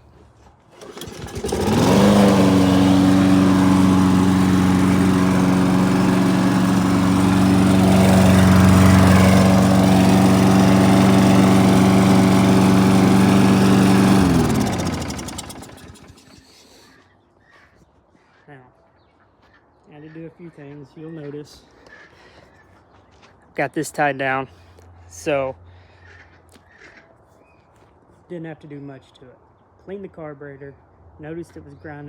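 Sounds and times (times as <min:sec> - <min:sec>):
lawn mower engine running: 0:00.7 - 0:16.6.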